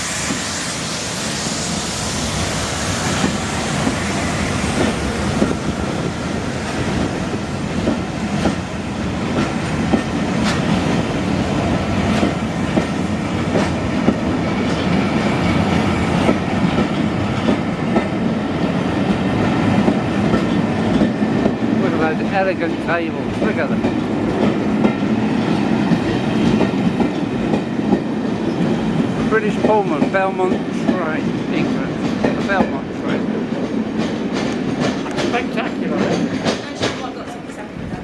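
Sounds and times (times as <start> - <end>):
train rumble: 0.0 - 38.0
train wheels clicking over rail joints: 2.3 - 38.0.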